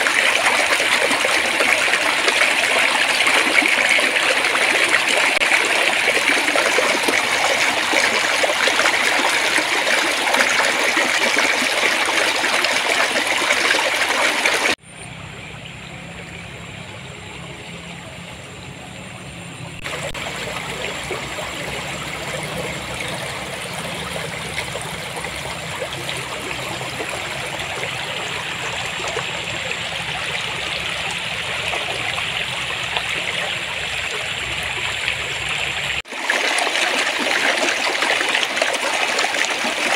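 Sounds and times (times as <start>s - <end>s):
stream water babbling: 0.0s - 14.8s, 19.7s - 39.9s.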